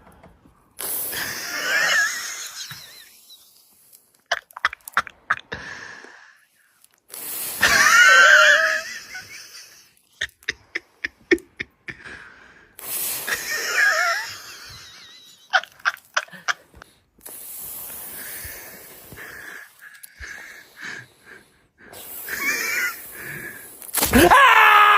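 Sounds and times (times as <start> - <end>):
steady hiss: 0.8 - 4.4, 5.6 - 11.4, 12.6 - 24.1
person laughing: 1.1 - 3.5, 4.3 - 5.6, 7.6 - 12.3, 13.2 - 16.8.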